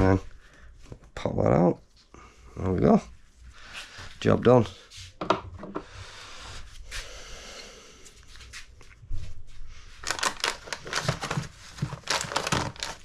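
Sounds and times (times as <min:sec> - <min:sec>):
parts and tools handled on workbench: 0:04.9 - 0:05.9.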